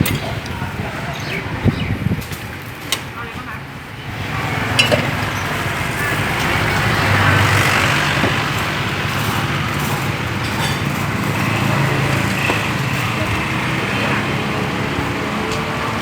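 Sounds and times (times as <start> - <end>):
road traffic noise: 0.0 - 16.0
vehicle engine rumbling: 3.8 - 16.0.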